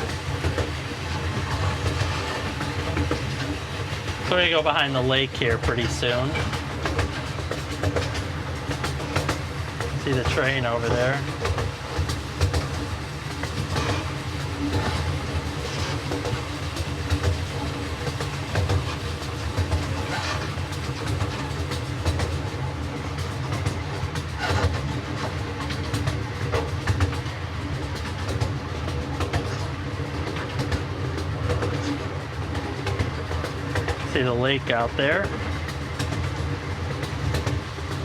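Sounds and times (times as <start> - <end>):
train rolling rumble: 0.0 - 38.0
wheels clicking over rail joints: 0.0 - 38.0.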